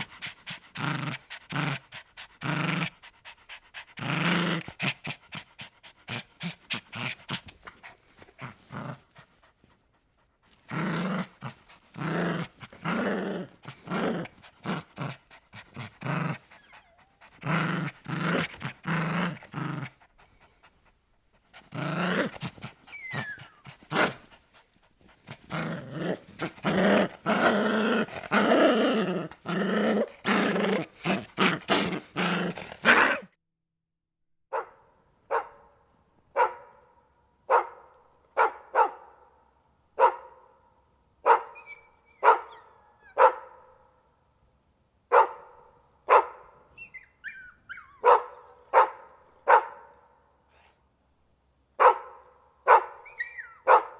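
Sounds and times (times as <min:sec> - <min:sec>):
dog growling: 0:00.0 - 0:09.4, 0:10.5 - 0:20.7, 0:21.5 - 0:33.4.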